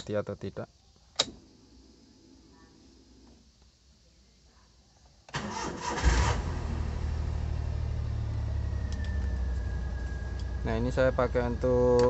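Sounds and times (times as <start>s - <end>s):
car engine idling: 5.3s - 12.0s.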